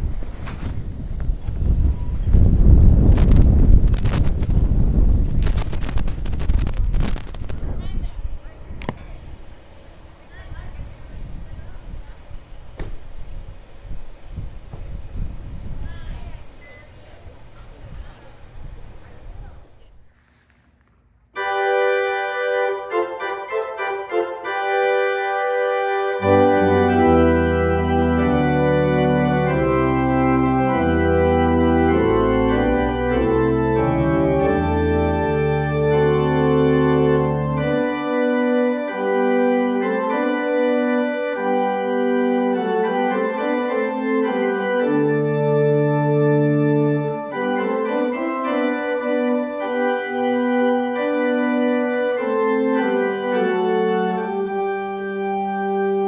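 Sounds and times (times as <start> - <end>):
organ pedal bass notes: 0.0 - 7.6, 21.4 - 56.0
organ playing chords: 21.4 - 56.0.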